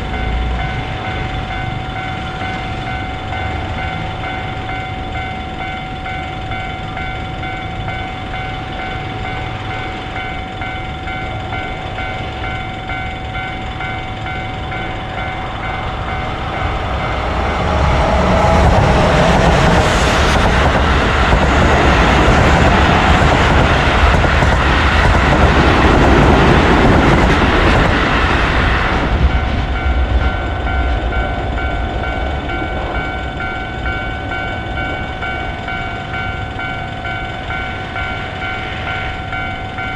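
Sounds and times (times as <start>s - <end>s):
level crossing warning bell: 0.0s - 39.9s
train passing: 0.0s - 39.9s.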